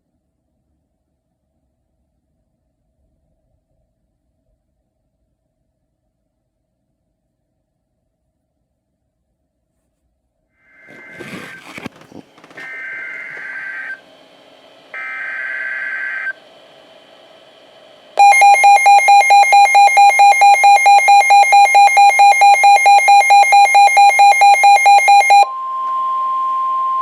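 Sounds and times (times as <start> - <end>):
buzzy warbling data bursts: 10.8 - 14.0
steady warning alarm tone: 10.8 - 16.4, 18.2 - 27.0
rapidly pulsing alarm beep: 12.6 - 14.0, 15.0 - 16.4, 18.2 - 25.5.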